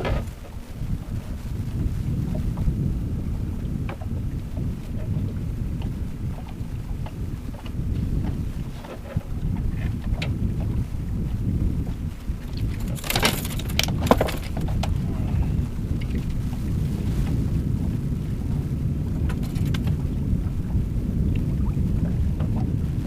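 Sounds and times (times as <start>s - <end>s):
wind buffeting microphone: 0.0s - 23.0s
sharp clicks and rattles: 12.5s - 15.0s, 19.3s - 20.0s.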